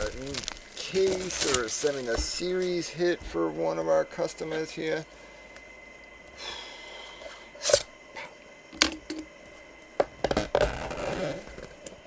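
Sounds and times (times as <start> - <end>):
cardboard box rustling: 0.0 - 2.8.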